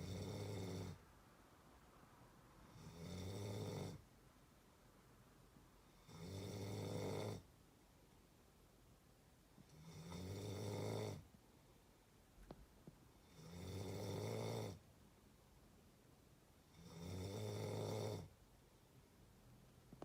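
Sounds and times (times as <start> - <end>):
person snoring: 0.0 - 1.0, 2.7 - 4.0, 5.9 - 7.4, 13.2 - 14.8, 16.7 - 18.3.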